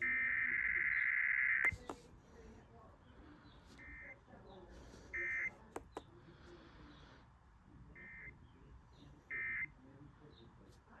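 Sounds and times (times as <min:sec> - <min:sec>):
sharp clicks: 0:05.7 - 0:06.1.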